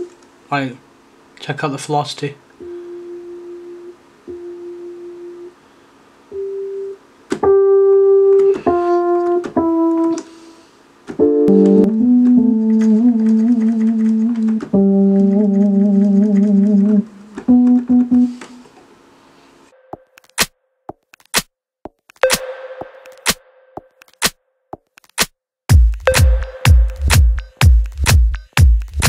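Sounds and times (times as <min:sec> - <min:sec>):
software keyboard notes and chords: 0:06.3 - 0:18.7, 0:22.0 - 0:29.0.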